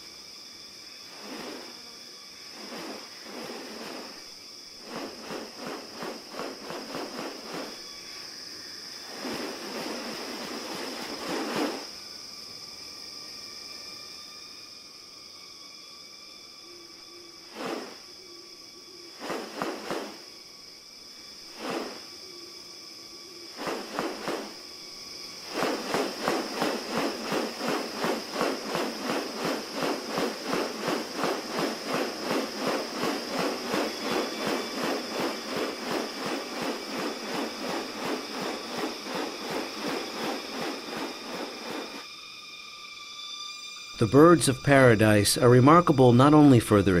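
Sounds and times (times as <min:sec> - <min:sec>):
high insect drone: 0:00.0 - 0:47.0
fast repeated pulses: 0:25.4 - 0:42.0.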